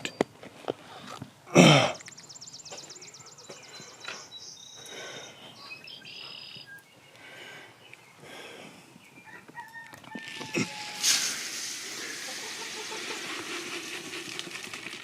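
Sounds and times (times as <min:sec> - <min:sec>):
chickens clucking: 0:09.3 - 0:14.6.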